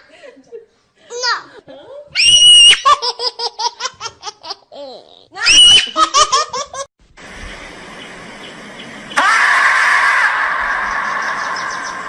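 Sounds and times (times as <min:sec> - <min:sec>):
baby laughing: 0:02.8 - 0:06.9
steady hiss: 0:07.0 - 0:09.2.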